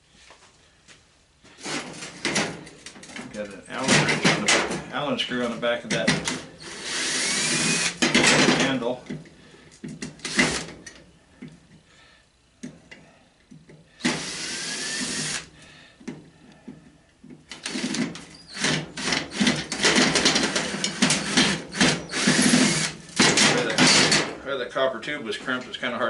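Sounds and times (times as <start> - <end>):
parts clicking and rattling: 1.7 - 5.0, 16.0 - 24.4
power drill running: 6.6 - 8.2, 10.2 - 10.8, 14.0 - 15.5, 17.6 - 23.4.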